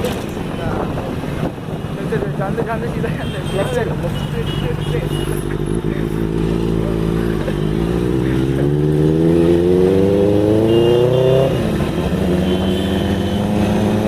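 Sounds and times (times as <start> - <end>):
motorcycle engine revving: 3.5 - 14.0.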